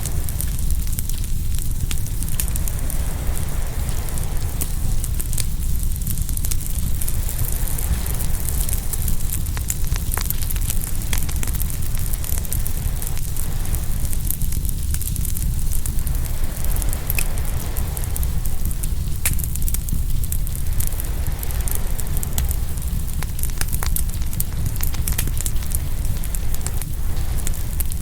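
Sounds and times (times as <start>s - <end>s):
wood fire crackling and popping: 0.0s - 28.0s
waves on the shore: 2.4s - 5.3s, 16.0s - 19.1s, 20.6s - 22.9s.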